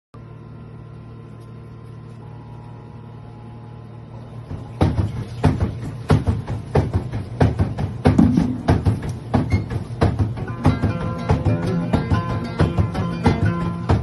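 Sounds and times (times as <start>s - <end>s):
washing machine humming: 0.2s - 14.0s
washing machine knocking: 4.3s - 14.0s.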